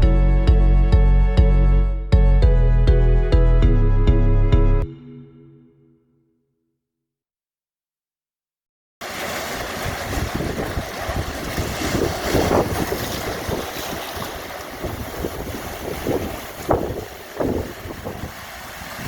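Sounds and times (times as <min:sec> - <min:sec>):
ocean waves breaking: 0:09.0 - 0:19.0
wind buffeting microphone: 0:09.6 - 0:19.0.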